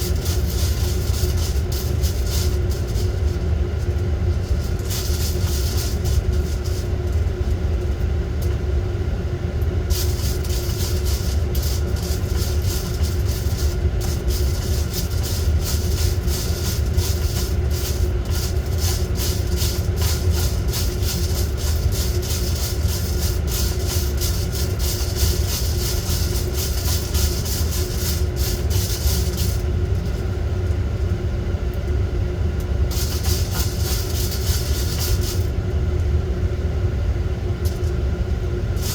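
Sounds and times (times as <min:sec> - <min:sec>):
dense rattling hiss: 0:00.0 - 0:03.4, 0:04.2 - 0:07.2, 0:09.8 - 0:30.3, 0:32.8 - 0:35.6
coffee roaster drum and fan rumble: 0:00.0 - 0:38.9.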